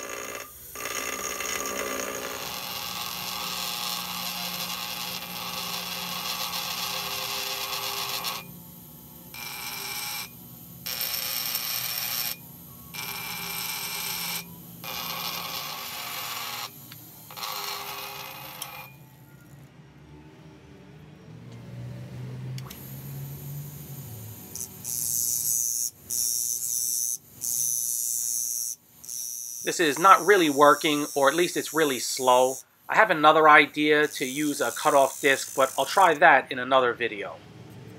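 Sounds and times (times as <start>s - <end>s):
harsh grinding on steel: 0.0s - 8.5s, 29.6s - 36.2s
grinder motor whine: 0.0s - 19.7s, 22.6s - 36.2s.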